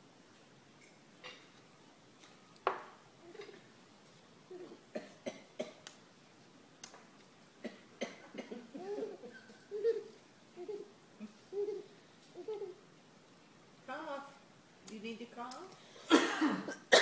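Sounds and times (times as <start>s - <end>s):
person coughing: 16.1s - 17.0s.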